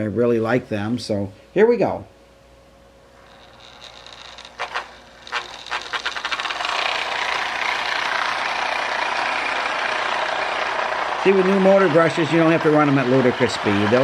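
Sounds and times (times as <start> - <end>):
toy train clicks: 3.2 - 14.0
toy train rattling on track: 3.2 - 14.0.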